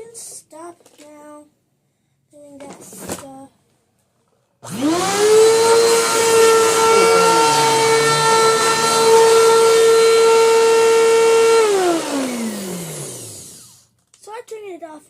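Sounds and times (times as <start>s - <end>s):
vacuum cleaner motor whining: 4.6s - 13.9s.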